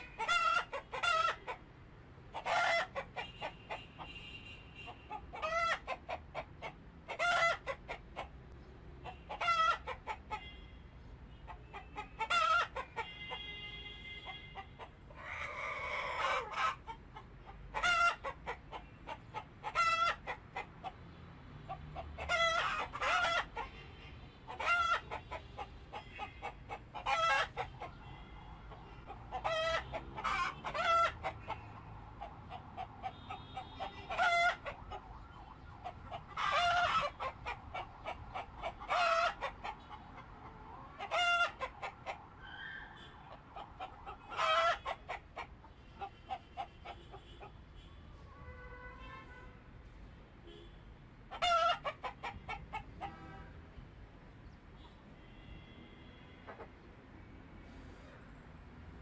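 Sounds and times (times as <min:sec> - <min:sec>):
chickens clucking: 0:00.0 - 0:01.6, 0:02.3 - 0:03.8, 0:05.1 - 0:08.4, 0:09.0 - 0:10.5, 0:11.5 - 0:13.2, 0:14.6 - 0:23.8, 0:24.5 - 0:42.3, 0:43.0 - 0:47.6, 0:51.3 - 0:53.3, 0:56.5 - 0:56.8.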